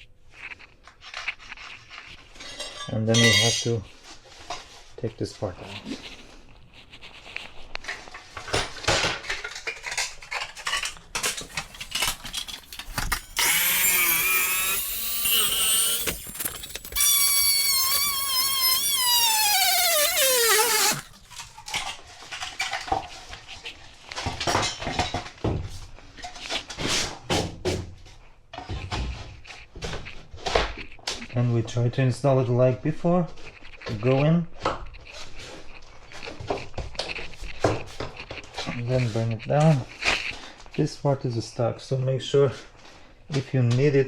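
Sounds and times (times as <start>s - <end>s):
power saw cutting plank: 11.6s - 21.2s.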